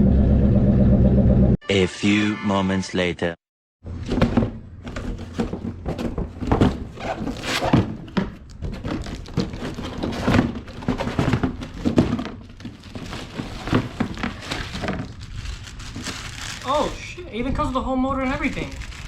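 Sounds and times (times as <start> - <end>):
low hum: 0.0 - 1.6
thunks of handling a boxed part: 4.0 - 15.1.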